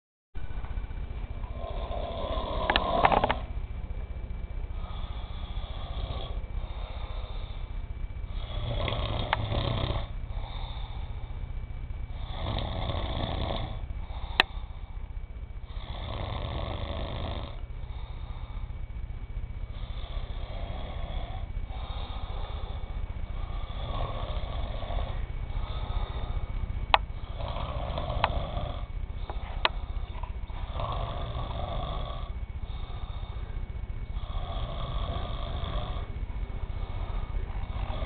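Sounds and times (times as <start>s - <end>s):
people snoring: 1.4s - 3.5s, 4.7s - 7.7s, 8.3s - 11.2s, 12.1s - 14.8s, 15.6s - 18.7s, 19.7s - 38.0s.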